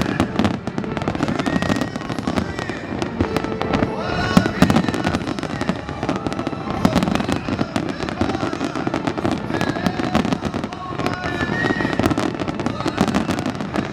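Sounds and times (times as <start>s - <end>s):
fireworks bangs and crackles: 0.0s - 13.9s.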